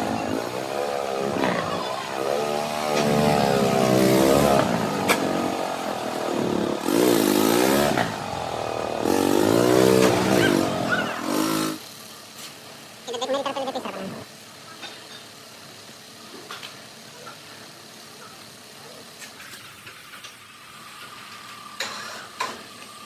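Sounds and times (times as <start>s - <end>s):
power tool motor under load: 0.0s - 11.8s
hiss of working metal: 14.3s - 23.0s.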